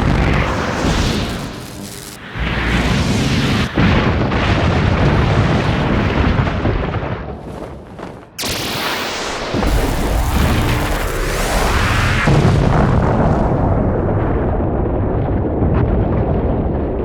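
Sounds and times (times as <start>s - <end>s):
sudden blast: 0.0s - 5.4s
heavy explosion rumble: 0.0s - 17.0s.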